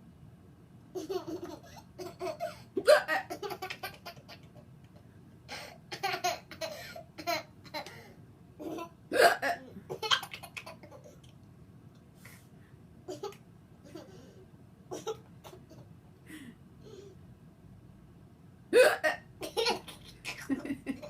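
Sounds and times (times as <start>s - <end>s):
young child laughing: 19.4s - 21.0s.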